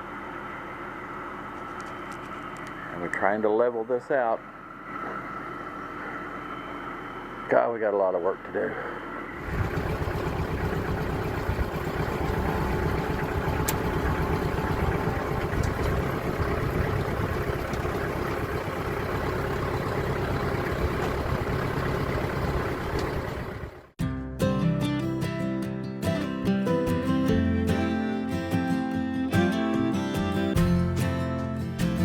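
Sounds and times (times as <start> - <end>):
tractor engine running: 9.4 - 24.0
acoustic guitar music: 9.6 - 17.6, 24.0 - 32.0.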